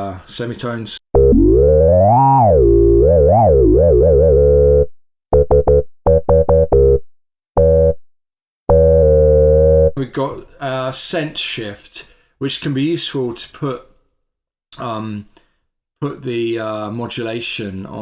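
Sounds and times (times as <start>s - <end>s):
low sub tone: 1.2s - 4.9s
synthesizer note gliding in pitch: 1.2s - 7.0s, 7.6s - 8.0s, 8.7s - 10.0s.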